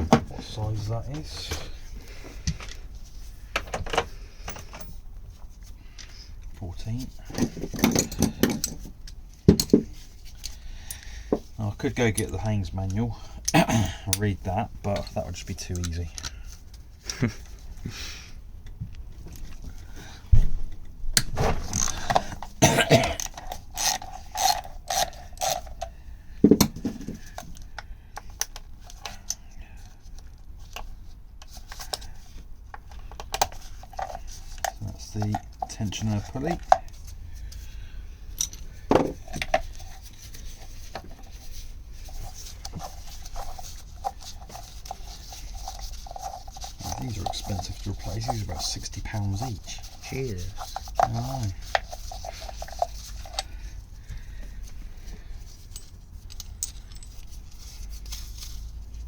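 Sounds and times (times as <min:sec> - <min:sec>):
metal parts clinking: 0:06.0 - 0:11.1, 0:21.2 - 0:25.9, 0:38.3 - 0:59.0.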